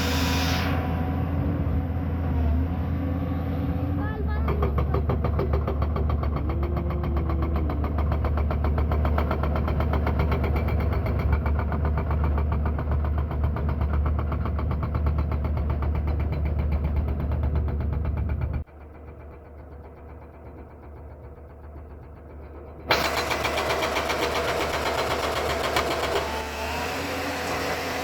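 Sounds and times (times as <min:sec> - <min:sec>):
diesel engine hum: 0:00.0 - 0:28.0
hydraulic breaker hammering rock: 0:04.4 - 0:16.6, 0:22.6 - 0:28.0.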